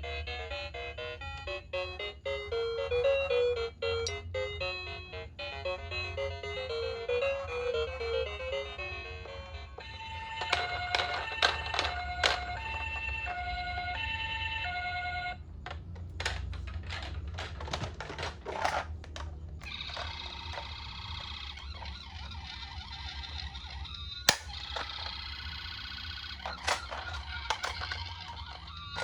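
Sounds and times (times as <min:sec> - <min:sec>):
toy electronic two-tone siren: 0:00.0 - 0:18.8, 0:19.6 - 0:29.0
sharp clicks: 0:24.3 - 0:25.1.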